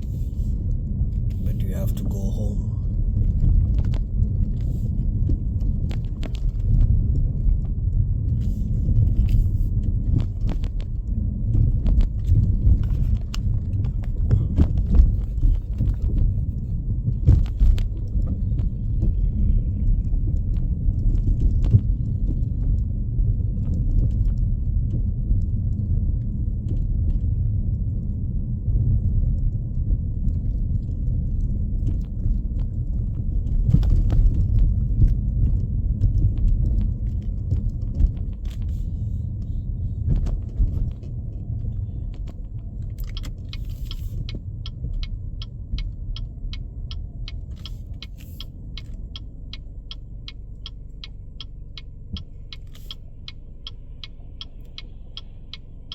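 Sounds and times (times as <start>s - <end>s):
car road rumble: 0.0s - 55.9s.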